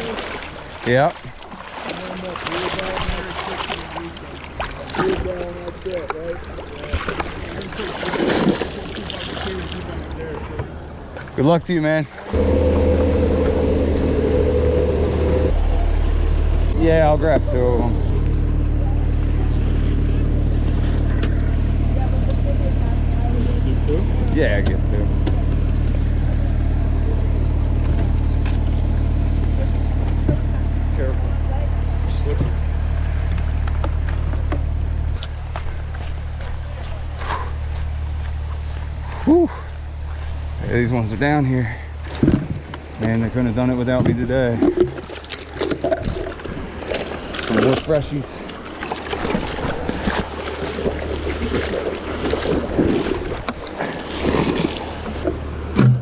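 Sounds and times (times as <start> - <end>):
water sloshing and splashing: 0.0 - 13.7, 17.2 - 56.0
truck engine idling: 12.3 - 44.6.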